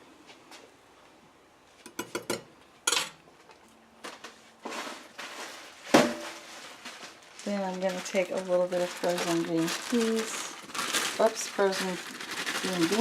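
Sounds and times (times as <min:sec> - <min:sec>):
metal utensils and pot clinking: 0:01.9 - 0:03.2.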